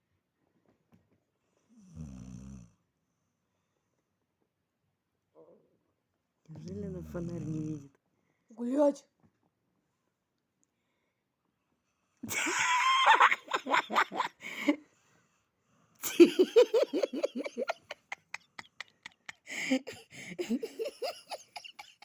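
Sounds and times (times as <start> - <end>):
person laughing and giggling: 12.3 - 14.8, 16.0 - 22.0.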